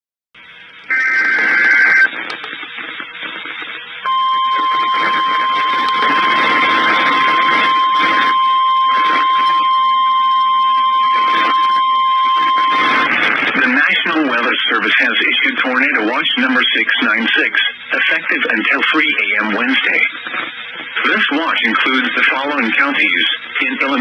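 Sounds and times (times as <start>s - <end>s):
radio hiss: 0.4s - 24.0s
steady warning alarm tone: 3.3s - 14.7s
digital header tones: 4.1s - 14.4s.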